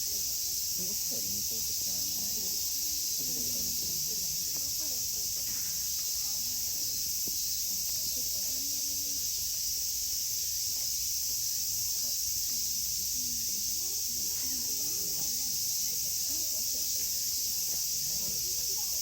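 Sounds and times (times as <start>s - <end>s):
faint voices: 0.0s - 19.0s
insect chorus drone: 0.0s - 19.0s.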